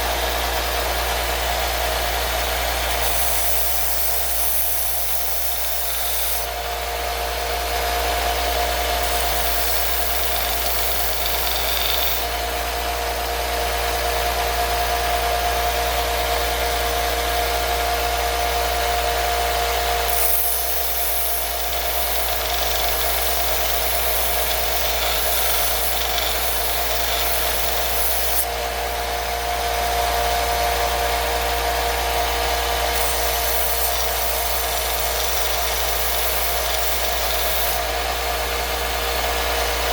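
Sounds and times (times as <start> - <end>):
belt sander motor hum: 0.0 - 39.9
sanding rasp: 2.9 - 6.6, 8.9 - 12.4, 20.1 - 28.5, 32.9 - 38.0.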